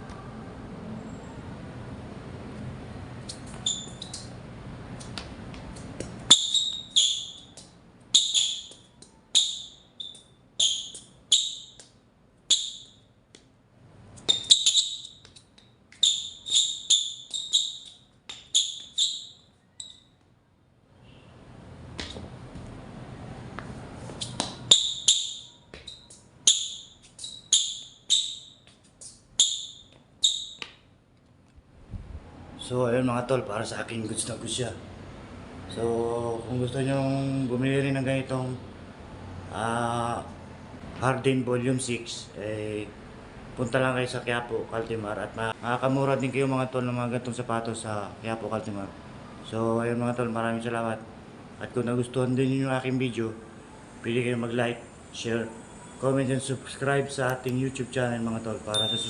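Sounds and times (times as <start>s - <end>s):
shoe soles squeaking on floor: 3.2s - 4.4s, 5.0s - 13.5s, 14.1s - 20.4s, 21.0s - 22.7s, 23.5s - 31.0s, 58.7s - 59.0s.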